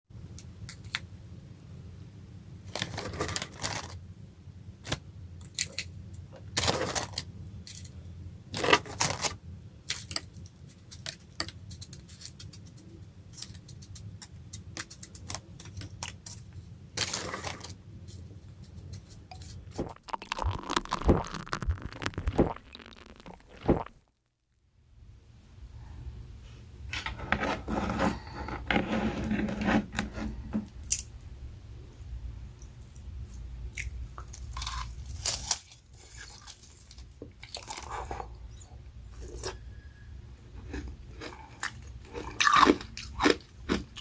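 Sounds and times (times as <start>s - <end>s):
small crackles and clicks: 9.9s - 24.2s
ice crunching while chewed: 19.4s - 24.0s, 33.8s - 38.6s, 39.2s - 39.6s, 40.6s - 44.0s.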